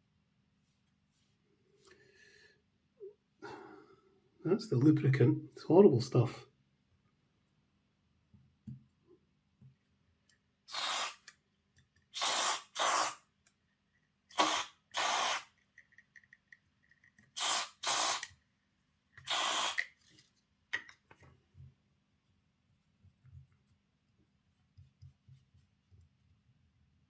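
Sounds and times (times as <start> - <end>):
aerosol spray hissing bursts: 10.7 - 11.3, 12.2 - 13.2, 14.3 - 15.5, 17.4 - 18.3, 19.2 - 19.9.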